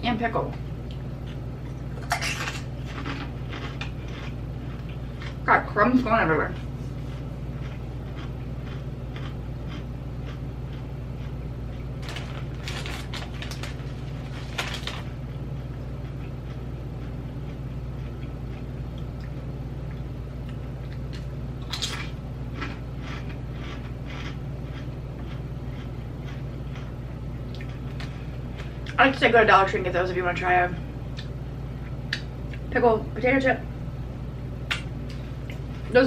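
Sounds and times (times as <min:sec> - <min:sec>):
steady low hum: 0:00.0 - 0:36.0
crunching potato chips: 0:02.0 - 0:05.4, 0:07.6 - 0:17.2, 0:21.0 - 0:26.9.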